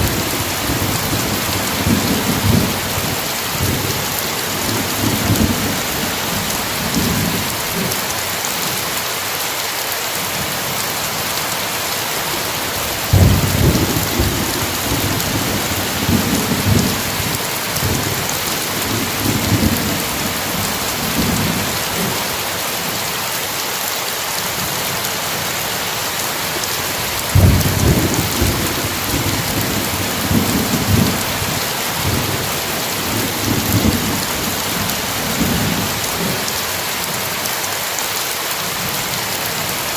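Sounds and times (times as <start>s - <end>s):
heavy rain: 0.0s - 39.9s
rolling thunder: 13.1s - 22.2s, 27.3s - 35.9s.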